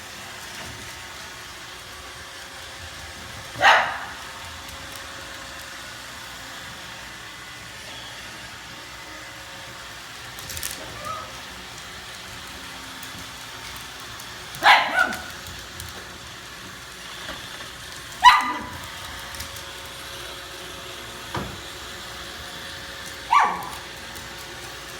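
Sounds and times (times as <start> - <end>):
robot vacuum humming: 0.0 - 24.9
dog barking: 3.6 - 4.2, 14.6 - 15.4, 18.2 - 18.8, 23.3 - 23.9.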